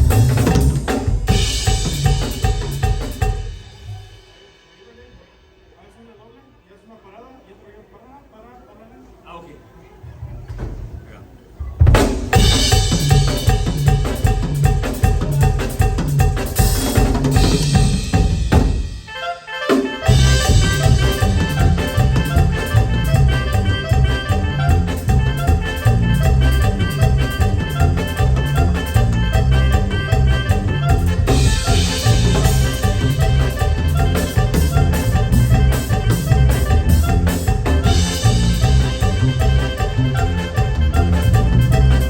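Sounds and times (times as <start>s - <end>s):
bass line: 0.0s - 3.9s, 11.5s - 19.1s, 20.1s - 42.0s
steady drum beat: 0.0s - 5.8s, 10.6s - 19.1s, 19.8s - 42.0s
live band playing: 0.0s - 6.6s, 10.1s - 42.0s.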